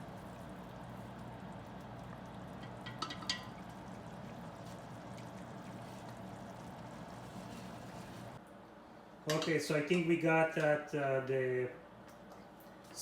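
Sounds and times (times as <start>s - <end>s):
sauce bubbling in a pan: 0.0s - 8.4s.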